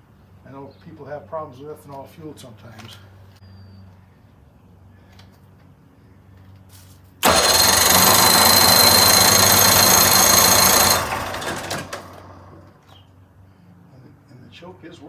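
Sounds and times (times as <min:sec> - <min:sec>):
electric starter cranking outboard: 0:07.2 - 0:12.8.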